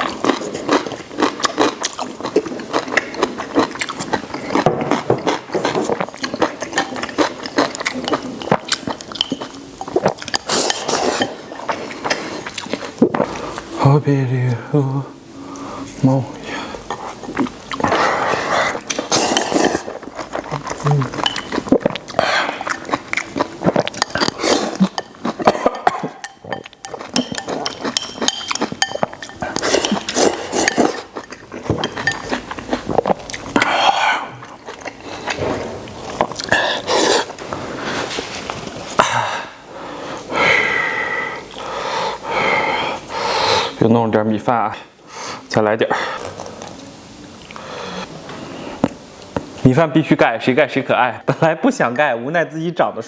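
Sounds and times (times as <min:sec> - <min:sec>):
man chewing and slurping: 0:00.0 - 0:13.8, 0:16.5 - 0:43.8
utensils clinking on dish: 0:08.0 - 0:11.7, 0:21.1 - 0:21.6, 0:23.8 - 0:32.4.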